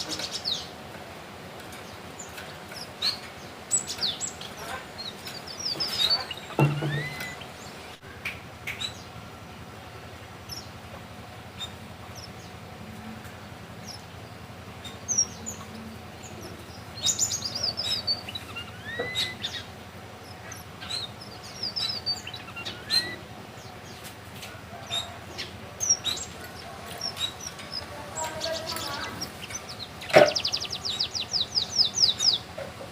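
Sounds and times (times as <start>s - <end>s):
finch chirping and whistling: 2.2s - 7.8s, 8.7s - 9.1s, 11.5s - 12.6s, 13.8s - 24.0s, 24.8s - 32.6s.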